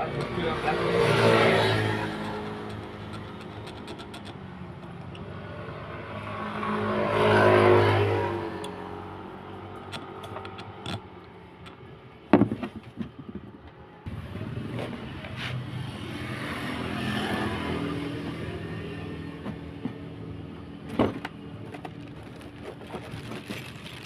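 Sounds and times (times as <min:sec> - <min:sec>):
vehicle engine running: 0:00.0 - 0:06.9
sharp knocks and clicks: 0:01.0 - 0:05.3, 0:09.7 - 0:13.8.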